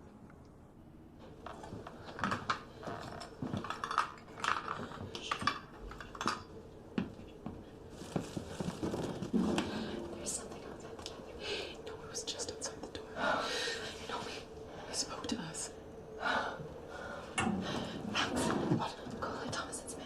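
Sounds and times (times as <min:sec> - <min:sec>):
hard objects clinking and knocking: 0:02.2 - 0:07.1.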